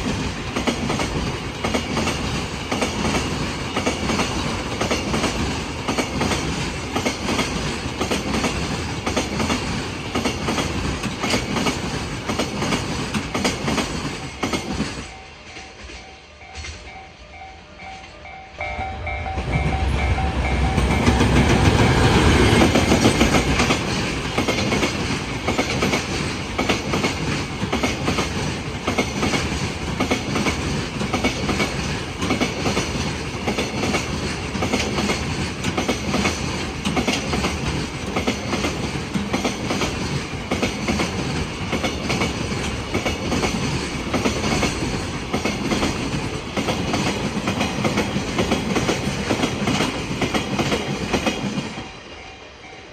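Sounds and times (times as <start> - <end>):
freight train passing: 0.0 - 52.9
level crossing warning bell: 15.1 - 21.4
wagon wheels clattering on rails: 20.8 - 51.7.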